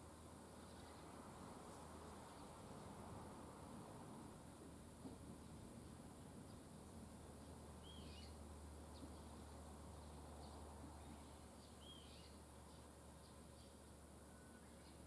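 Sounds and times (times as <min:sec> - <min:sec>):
small birds chirping: 0:07.4 - 0:15.0.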